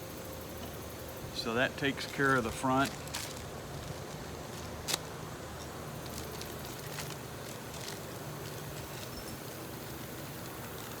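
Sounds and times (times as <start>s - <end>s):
low hum of shop background: 0.0s - 11.0s.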